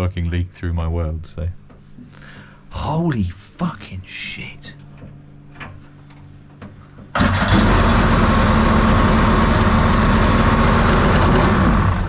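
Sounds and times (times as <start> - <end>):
two-stroke boat engine running: 7.2 - 12.0.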